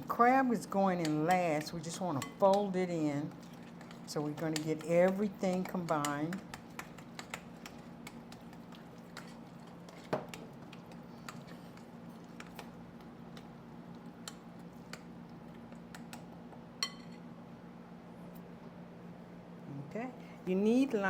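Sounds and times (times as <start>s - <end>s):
steady low hum: 0.0s - 21.0s
utensil clinking against bowl: 3.4s - 8.5s.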